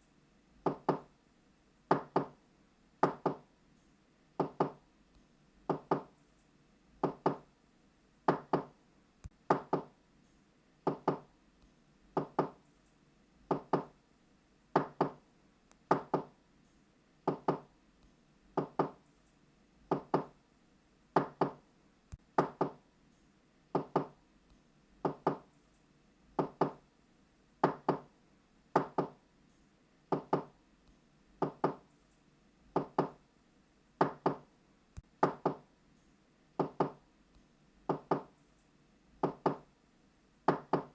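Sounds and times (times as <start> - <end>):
knocking on wooden door: 0.6 - 1.1, 1.9 - 2.4, 3.0 - 3.4, 4.4 - 4.8, 5.7 - 6.1, 7.0 - 7.4, 8.3 - 8.7, 9.5 - 9.9, 10.9 - 11.3, 12.2 - 12.6, 13.5 - 13.9, 14.8 - 15.2, 15.9 - 16.3, 17.3 - 17.7, 18.6 - 19.0, 19.9 - 20.3, 21.2 - 21.6, 22.4 - 22.8, 23.8 - 24.2, 25.0 - 25.4, 26.4 - 26.8, 27.6 - 28.1, 28.8 - 29.2, 30.1 - 30.5, 31.4 - 31.8, 32.8 - 33.2, 34.0 - 34.4, 35.2 - 35.6, 36.6 - 37.0, 37.9 - 38.3, 39.2 - 39.6, 40.5 - 40.9.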